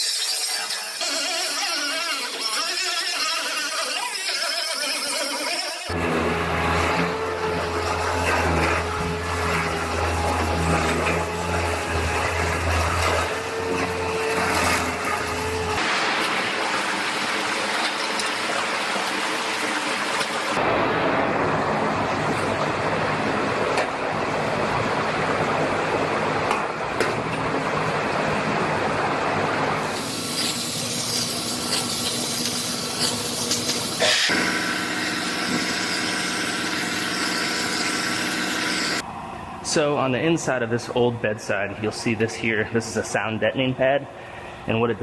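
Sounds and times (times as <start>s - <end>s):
power tools grinding metal: 0.0s - 20.4s, 29.8s - 39.0s.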